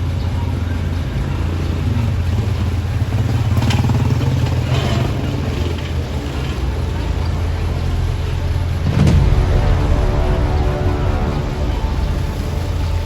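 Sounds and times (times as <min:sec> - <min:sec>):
rumble of passing traffic: 0:00.0 - 0:13.0
brief higher noisy sounds: 0:08.9 - 0:13.0.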